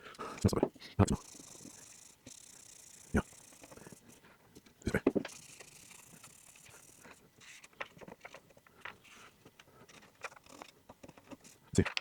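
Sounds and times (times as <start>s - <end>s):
faint scratching and rubbing: 0.4s - 11.8s.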